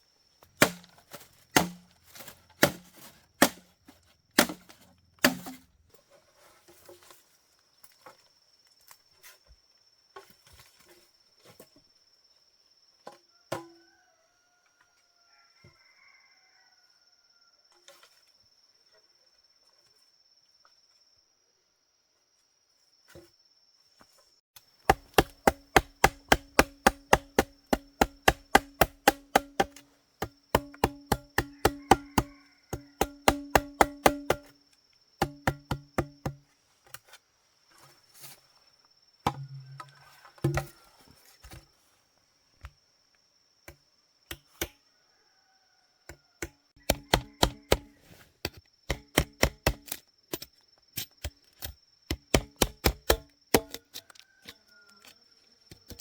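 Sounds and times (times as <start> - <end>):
chopping strikes on wood: 0.6 - 1.0, 1.6 - 1.9, 2.6 - 3.7, 4.4 - 5.6, 24.9 - 34.6, 35.2 - 36.4, 39.3 - 39.8, 40.4 - 40.8, 46.4 - 50.0, 52.1 - 53.8.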